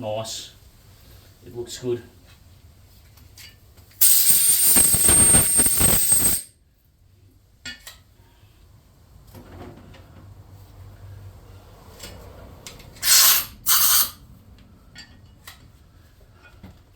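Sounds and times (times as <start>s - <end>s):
cordless drill whining: 4.0s - 6.5s.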